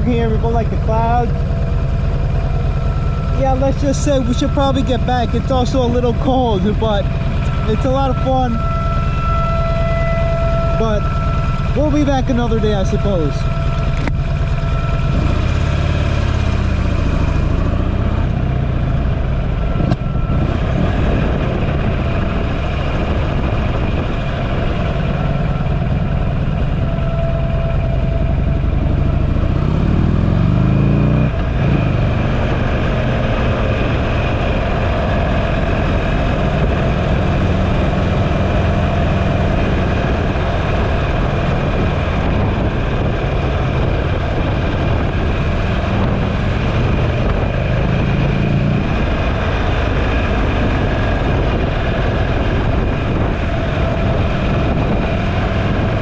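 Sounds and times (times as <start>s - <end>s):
motorcycle engine accelerating: 0.0s - 56.0s.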